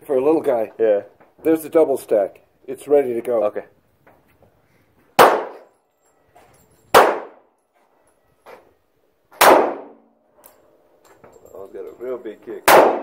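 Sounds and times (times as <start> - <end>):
handgun shots: 5.2 - 5.7, 6.9 - 7.4, 9.4 - 10.0, 12.6 - 13.0.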